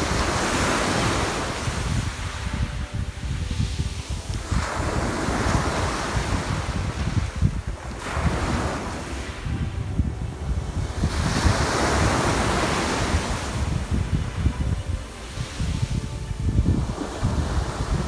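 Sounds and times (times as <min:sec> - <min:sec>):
sea waves breaking on shore: 0:00.0 - 0:18.0
wind rumbling on microphone: 0:00.0 - 0:18.0.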